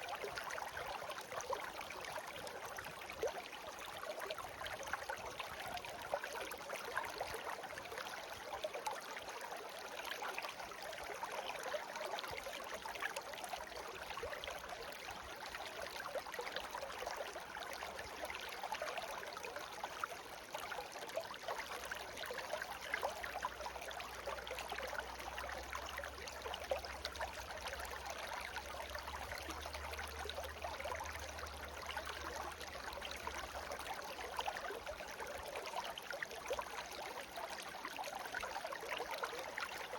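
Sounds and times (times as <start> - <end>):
stream babbling over stones: 0.0 - 39.9.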